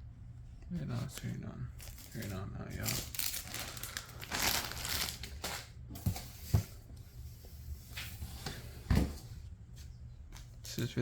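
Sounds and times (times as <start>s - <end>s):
packaging rustle: 1.8s - 5.7s.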